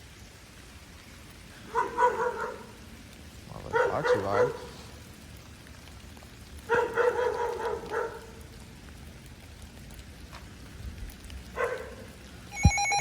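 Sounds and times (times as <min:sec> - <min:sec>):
dog yapping: 0:01.7 - 0:02.7, 0:06.7 - 0:08.3.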